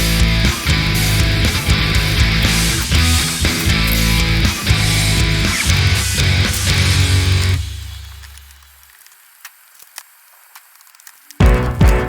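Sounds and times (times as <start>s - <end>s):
heavy rock music: 0.0s - 8.5s, 11.4s - 12.0s.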